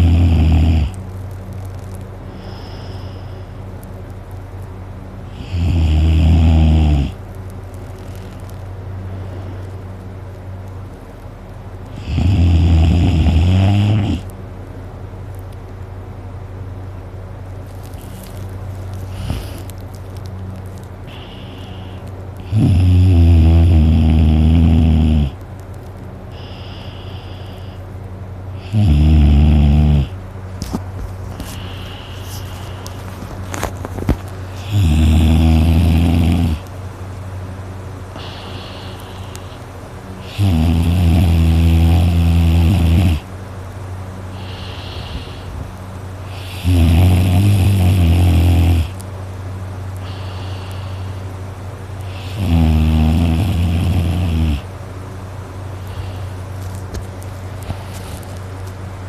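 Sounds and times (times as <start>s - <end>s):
person snoring loudly: 0.0s - 1.0s, 5.3s - 7.2s, 11.9s - 14.3s, 21.1s - 25.4s, 28.6s - 30.2s, 34.5s - 36.6s, 38.2s - 39.6s, 40.2s - 43.3s, 46.3s - 49.0s, 52.1s - 54.7s
faint breath: 2.2s - 3.7s, 21.1s - 22.1s, 26.3s - 27.9s, 31.3s - 33.7s, 38.1s - 40.4s, 44.3s - 46.6s, 50.0s - 52.4s, 55.7s - 56.8s.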